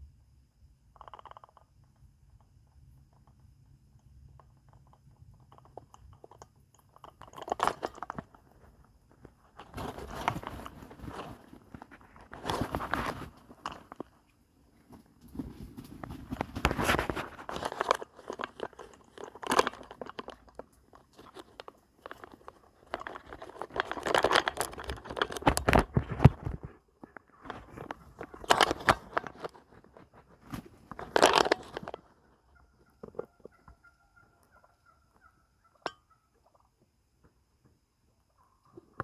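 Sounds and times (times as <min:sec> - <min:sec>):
crunching and rustling: 0:05.4 - 0:35.3.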